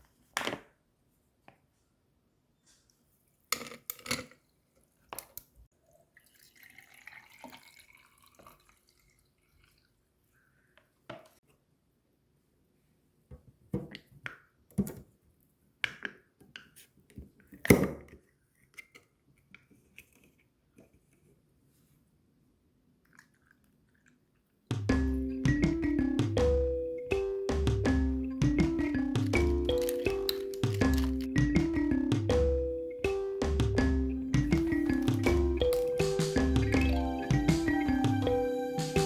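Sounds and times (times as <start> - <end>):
knocks and clicks of handling: 28.6 - 31.7.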